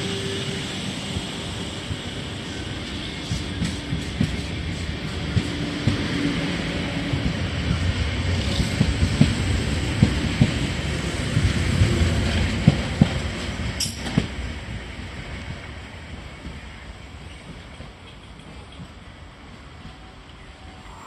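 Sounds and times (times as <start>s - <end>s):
train rumble: 0.0s - 14.3s
train wheels knocking on rails: 2.5s - 6.3s, 7.0s - 14.4s.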